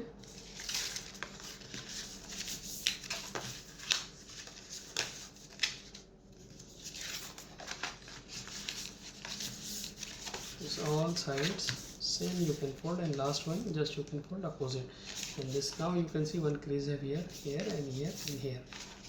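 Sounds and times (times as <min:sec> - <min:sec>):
card folds clicking: 0:00.2 - 0:14.3
stiff card crackling and rustling: 0:00.2 - 0:14.3, 0:15.0 - 0:16.5, 0:17.1 - 0:19.0.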